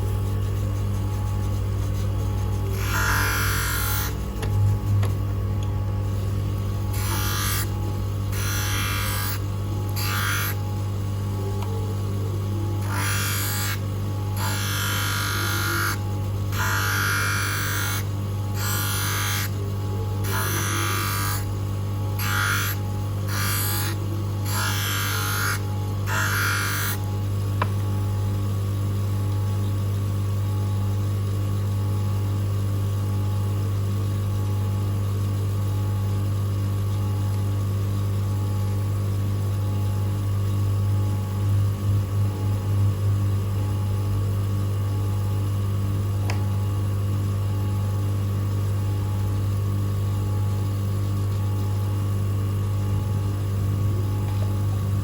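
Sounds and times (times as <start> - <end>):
electric motor humming: 0.0 - 28.1.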